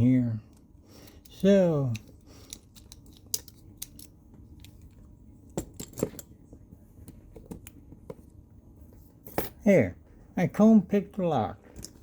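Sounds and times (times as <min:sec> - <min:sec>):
lock picking clicks and scrapes: 0:01.0 - 0:04.9.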